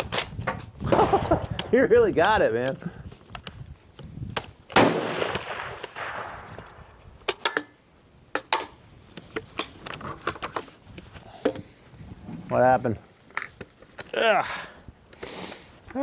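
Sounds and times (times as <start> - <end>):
rifle shot with echo: 4.8 - 7.0.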